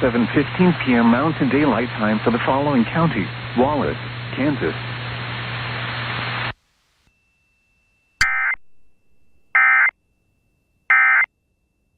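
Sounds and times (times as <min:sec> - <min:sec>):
radio hiss with low hum: 0:00.0 - 0:06.6.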